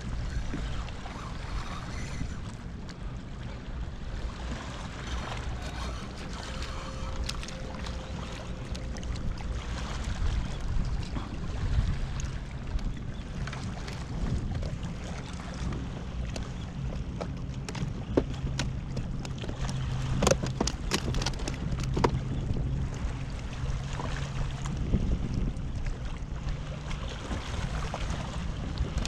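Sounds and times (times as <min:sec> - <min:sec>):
water lapping against hull: 0:00.0 - 0:29.0
wind rumbling on microphone: 0:00.0 - 0:29.0
small knocks and clicks: 0:17.2 - 0:22.2.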